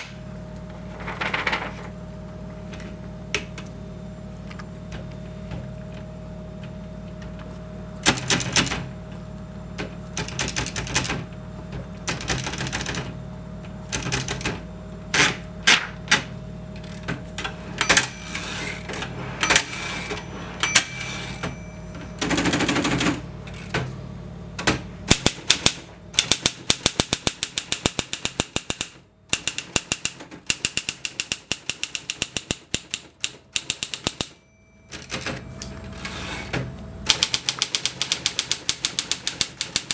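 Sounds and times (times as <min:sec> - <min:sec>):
manual typewriter keystrokes: 0:08.0 - 0:08.9, 0:09.8 - 0:11.3, 0:12.0 - 0:13.2, 0:13.9 - 0:23.8, 0:24.6 - 0:39.9.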